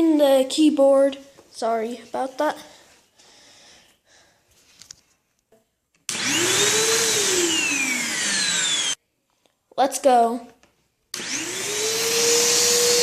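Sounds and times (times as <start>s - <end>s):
faint handling noises: 4.5s - 5.7s
vacuum cleaner motor whine: 6.1s - 9.0s, 11.2s - 13.0s.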